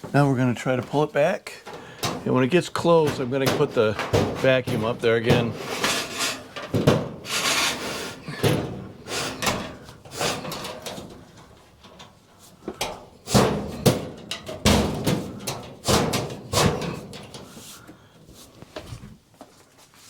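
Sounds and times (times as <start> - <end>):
chimney brush scraping in pipe: 1.8 - 11.6.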